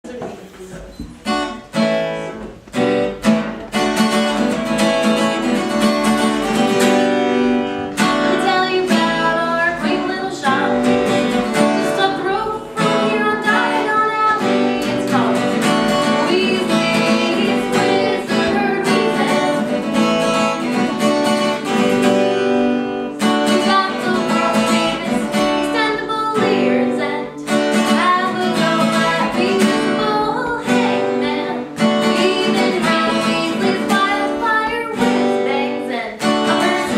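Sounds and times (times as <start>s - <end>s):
strummed acoustic guitar: 1.0s - 36.9s
person singing: 8.0s - 20.9s, 23.2s - 36.9s.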